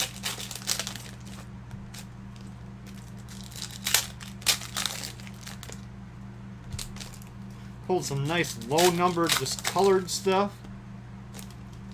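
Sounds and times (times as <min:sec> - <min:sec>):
plastic sleeves crinkling: 0:00.0 - 0:05.9, 0:06.8 - 0:07.4, 0:08.0 - 0:10.3, 0:11.3 - 0:11.9
steady low hum: 0:00.0 - 0:11.9.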